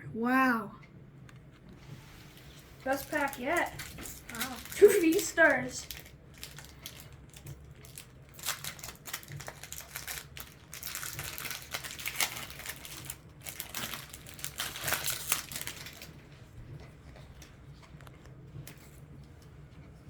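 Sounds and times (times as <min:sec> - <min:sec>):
foil wrapper crinkling: 0:02.5 - 0:16.4.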